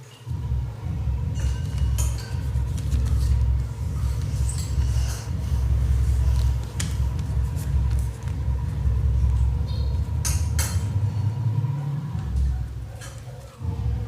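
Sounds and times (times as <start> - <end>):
loud low rumble: 0.3 - 14.0
paper folding and crinkling: 1.6 - 9.5.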